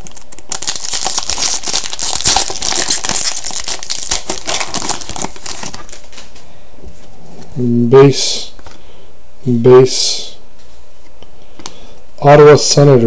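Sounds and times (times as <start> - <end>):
foil wrapper crinkling: 0.0 - 6.4.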